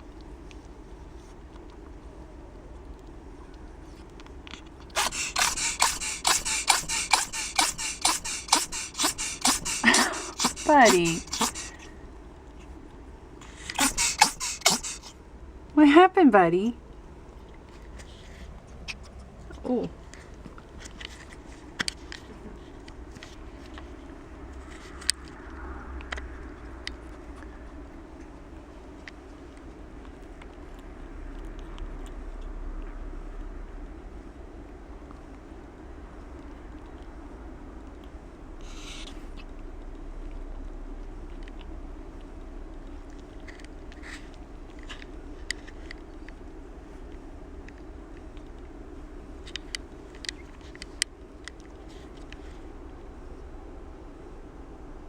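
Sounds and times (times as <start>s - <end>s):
steady low hum: 0.0s - 55.0s
ferret sneezing: 4.8s - 11.9s, 13.4s - 15.2s.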